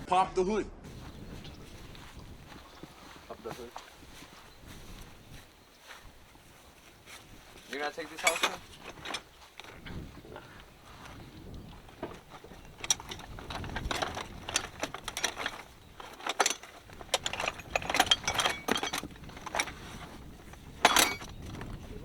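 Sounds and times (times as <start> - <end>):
metal tools clinking: 7.6 - 21.8.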